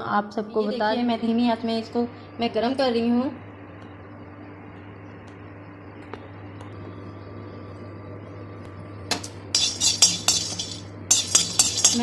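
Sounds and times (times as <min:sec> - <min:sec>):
low steady hum: 0:00.0 - 0:12.0
metal spoon scraping a pan: 0:09.6 - 0:12.0.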